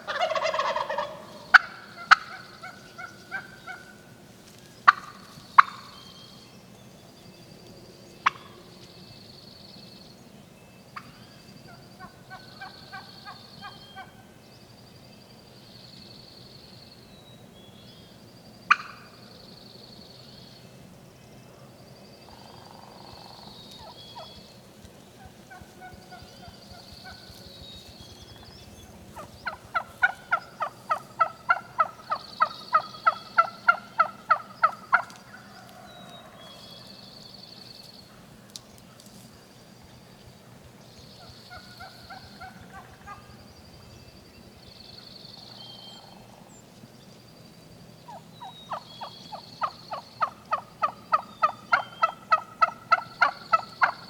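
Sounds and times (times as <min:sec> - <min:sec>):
turkey yelps: 0:00.0 - 0:03.9, 0:29.0 - 0:36.4, 0:48.1 - 0:54.0
turkey clucks: 0:00.0 - 0:04.0, 0:04.8 - 0:06.0, 0:08.2 - 0:08.5, 0:12.0 - 0:14.2, 0:18.7 - 0:19.0, 0:22.3 - 0:36.4, 0:41.2 - 0:43.4, 0:48.1 - 0:54.0
turkey gobbling: 0:00.0 - 0:04.0, 0:04.8 - 0:06.0, 0:12.0 - 0:14.1, 0:22.3 - 0:36.4, 0:41.2 - 0:43.4, 0:48.1 - 0:54.0.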